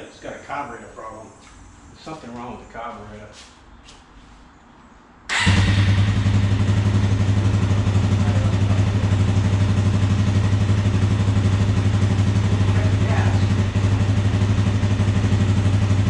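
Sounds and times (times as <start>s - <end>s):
motorcycle engine idling: 5.3s - 16.0s.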